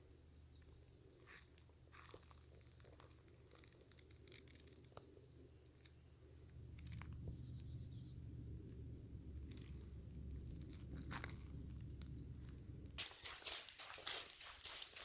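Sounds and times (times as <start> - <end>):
faint footsteps on a trail: 0.5 - 5.1, 9.5 - 15.0
low rumble: 6.4 - 13.0.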